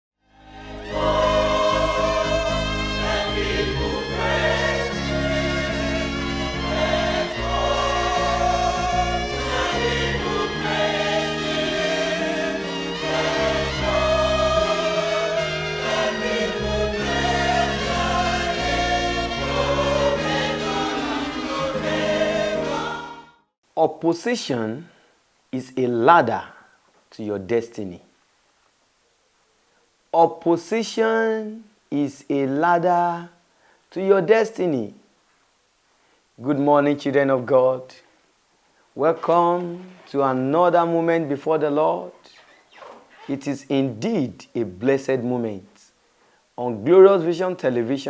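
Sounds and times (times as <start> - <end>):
bass and keyboard accompaniment: 0.3 - 23.3
gospel choir singing: 0.3 - 23.4, 39.0 - 44.0.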